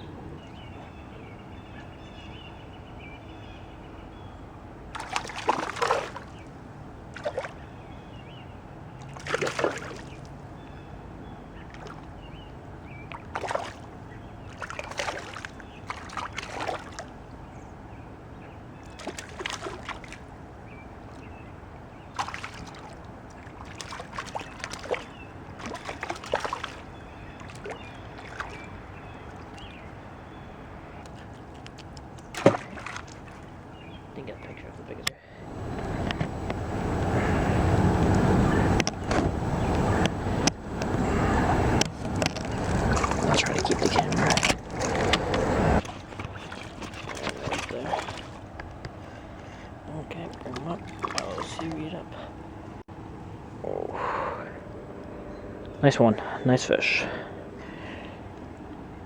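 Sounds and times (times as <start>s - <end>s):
water splashing: 4.9s - 7.7s, 9.0s - 10.4s, 11.6s - 12.3s, 13.0s - 17.4s, 18.8s - 30.0s, 31.0s - 33.8s, 35.5s - 52.8s
hiss of flowing water: 35.3s - 41.8s, 53.8s - 54.6s.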